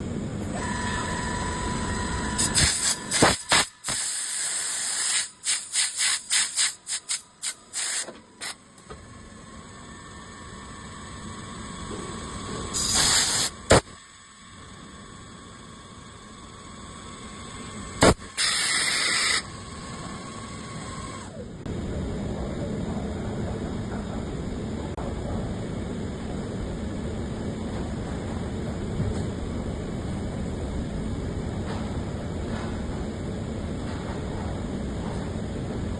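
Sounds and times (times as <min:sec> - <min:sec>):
lathe running: 0:00.5 - 0:03.2, 0:08.3 - 0:21.9
compressed air blow gun blasts: 0:02.4 - 0:08.6, 0:12.7 - 0:14.0, 0:18.0 - 0:19.5.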